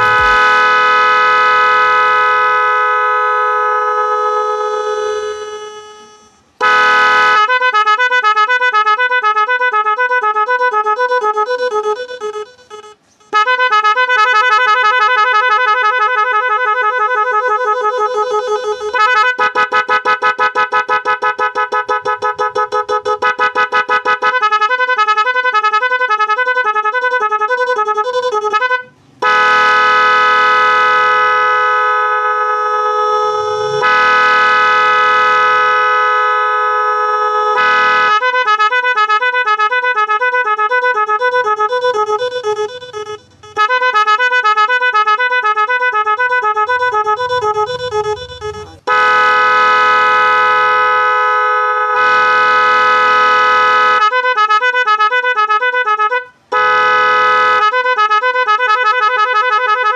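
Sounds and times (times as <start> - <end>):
electric pressure horn: 0.0 - 59.9.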